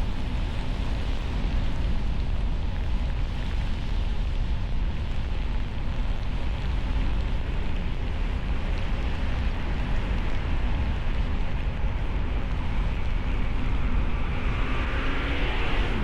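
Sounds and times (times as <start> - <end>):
car driving on snowy road: 12.6 - 16.0.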